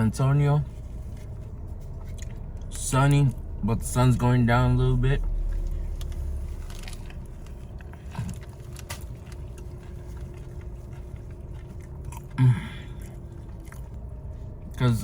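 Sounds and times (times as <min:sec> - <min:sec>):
person chewing food: 0:01.0 - 0:02.8, 0:05.2 - 0:14.8.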